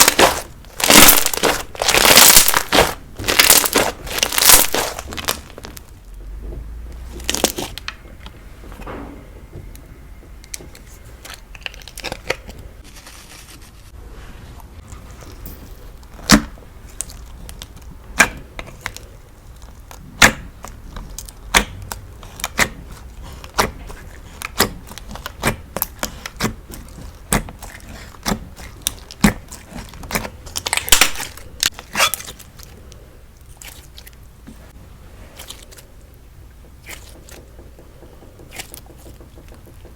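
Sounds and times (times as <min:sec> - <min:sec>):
slime clicking and popping: 0:00.0 - 0:05.8, 0:19.6 - 0:32.4
slime crackling: 0:00.0 - 0:06.0, 0:07.0 - 0:08.0, 0:15.0 - 0:34.2.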